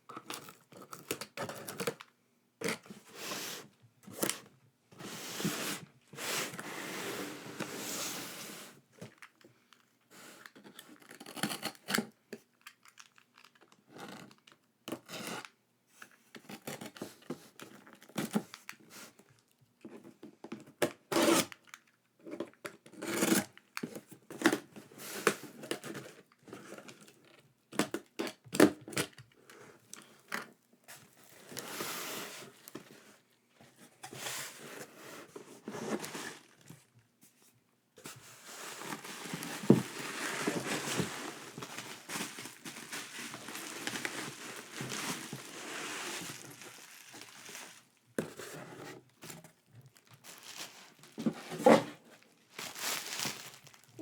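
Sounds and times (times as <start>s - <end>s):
wrapping crinkling and tearing: 12.6s - 14.6s, 38.6s - 48.1s, 49.8s - 51.3s, 52.1s - 54.0s
packaging rustling: 38.0s - 54.0s.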